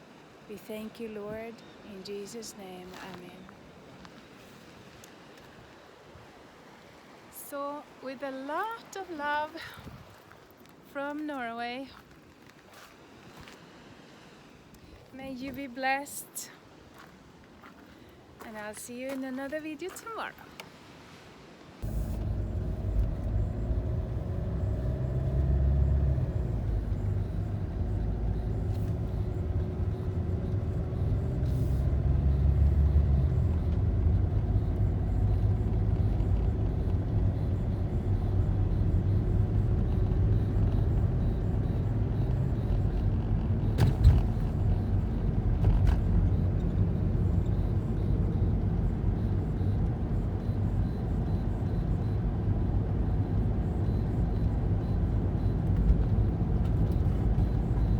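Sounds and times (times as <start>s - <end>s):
car engine and road rumble: 21.8s - 57.9s.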